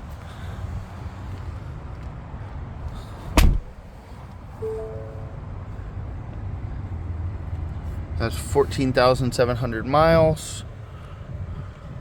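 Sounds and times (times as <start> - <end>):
car door shutting thump: 3.4 - 3.8
electronic chime: 4.6 - 5.7.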